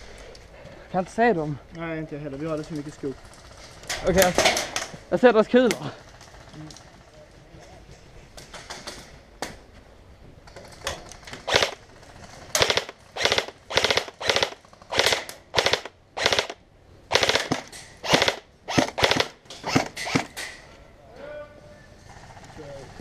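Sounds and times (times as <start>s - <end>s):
airsoft rifle firing bursts: 11.4s - 20.4s.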